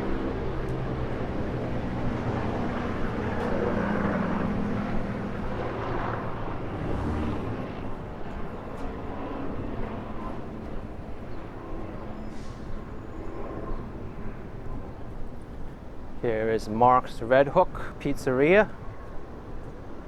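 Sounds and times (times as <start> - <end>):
vehicle engine passing by: 0.0 - 8.1.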